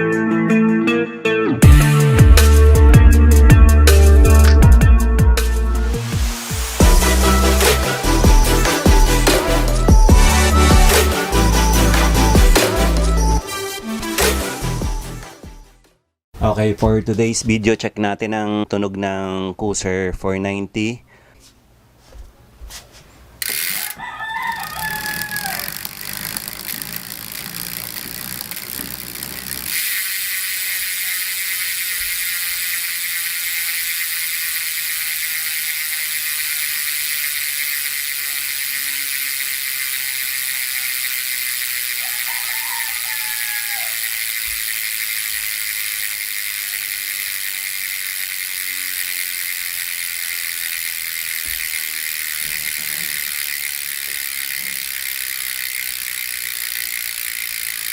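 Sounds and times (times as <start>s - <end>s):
bicycle hub freewheeling clicks: 5.4s - 13.4s, 23.4s - 57.9s
rooster crowing: 23.6s - 26.4s, 41.8s - 44.8s.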